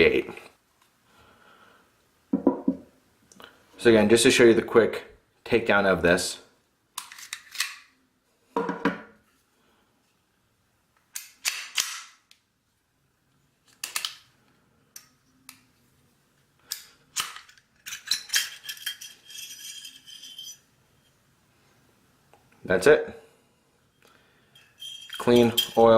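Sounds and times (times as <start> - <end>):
pistol metal clicks and clacks: 11.1 - 12.4
metal scraping and ringing: 18.7 - 21.2, 24.5 - 25.9.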